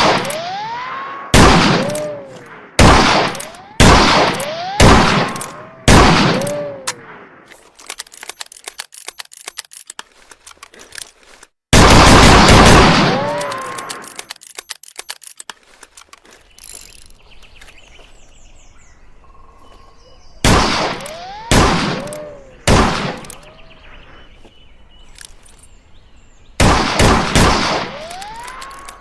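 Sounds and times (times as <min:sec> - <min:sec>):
revolver gunshots: 0:00.0 - 0:07.4, 0:11.7 - 0:13.4, 0:20.4 - 0:23.5, 0:26.6 - 0:28.8.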